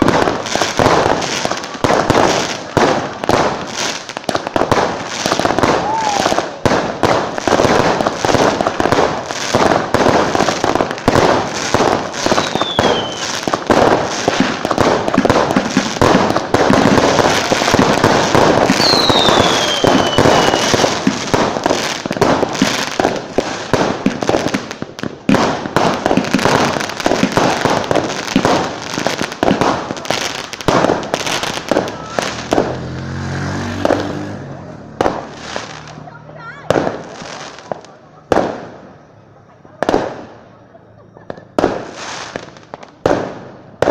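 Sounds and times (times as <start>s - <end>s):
fireworks bangs and crackling: 0.0s - 43.9s
falling firework whistle: 5.6s - 6.5s, 12.2s - 13.4s, 18.7s - 21.0s.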